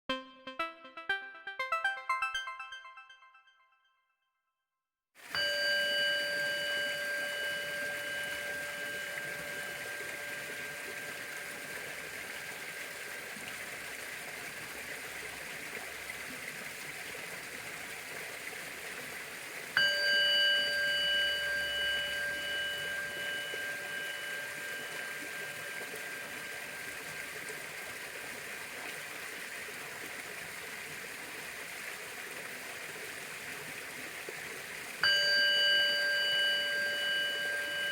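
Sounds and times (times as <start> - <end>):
constant hiss: 5.2 - 37.9
bowl bell ringing: 5.3 - 13.2, 19.8 - 27.6, 35.0 - 37.9.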